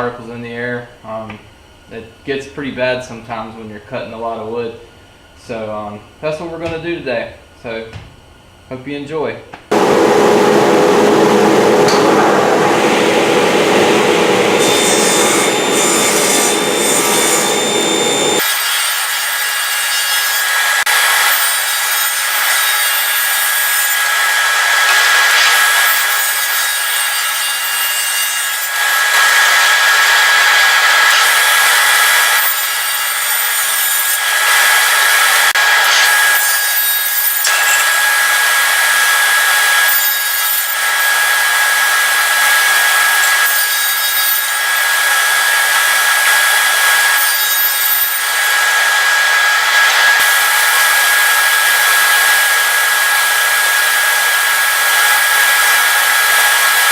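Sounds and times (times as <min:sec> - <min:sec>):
power saw cutting wood: 0:09.7 - 0:56.9.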